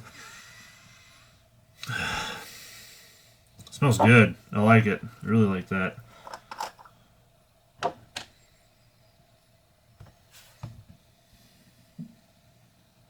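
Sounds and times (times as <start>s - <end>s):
small containers clicking and knocking: 6.2s - 6.9s.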